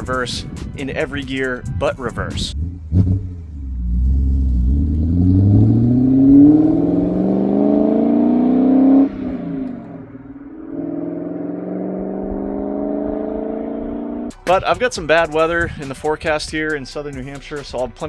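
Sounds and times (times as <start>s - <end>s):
car engine accelerating: 2.4s - 14.4s.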